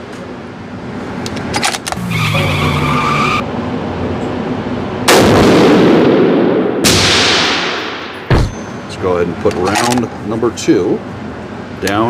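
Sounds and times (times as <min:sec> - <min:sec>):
rifle shot echoing indoors: 0:05.1 - 0:08.3.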